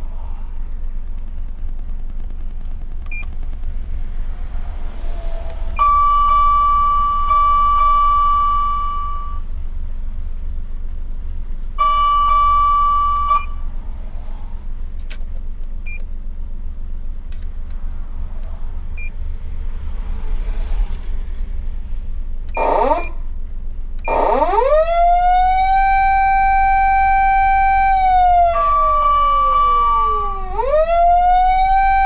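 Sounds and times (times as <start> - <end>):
low rumble: 0.0 - 32.0
steady electronic siren tone: 4.6 - 9.5, 11.8 - 13.7, 22.6 - 23.2, 24.1 - 32.0
short high beep: 5.8 - 9.4, 11.8 - 13.6.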